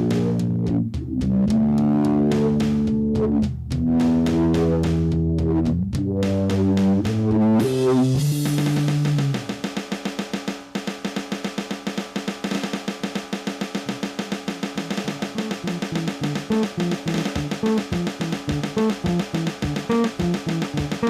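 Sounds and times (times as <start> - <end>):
band holding chords: 0.0 - 9.6, 13.9 - 21.0
fast drum beat: 6.2 - 21.0.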